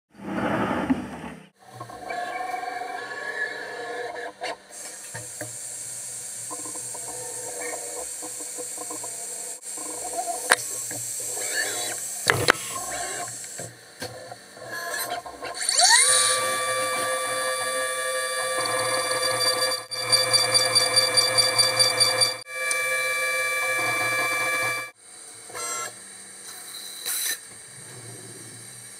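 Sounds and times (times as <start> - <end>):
milling machine hissing: 4.6 - 25.0
spindle whine: 6.4 - 26.0
held machine tones: 14.7 - 25.0.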